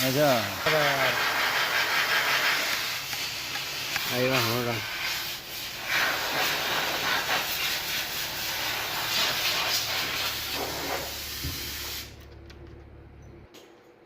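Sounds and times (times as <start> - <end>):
loud steady hiss: 0.0 - 12.2
low hum: 10.0 - 14.0.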